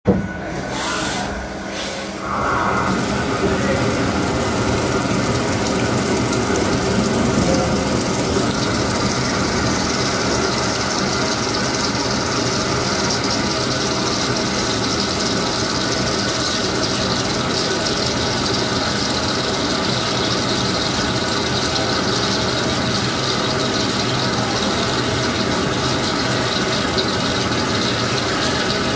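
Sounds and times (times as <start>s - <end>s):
machine mechanical hum: 0.1s - 28.9s.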